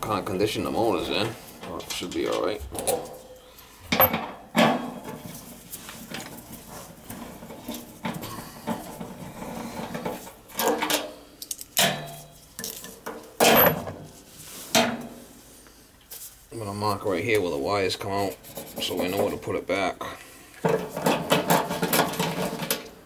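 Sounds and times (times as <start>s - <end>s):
sheet metal clanking and scraping: 0.9s - 11.2s, 20.6s - 23.0s.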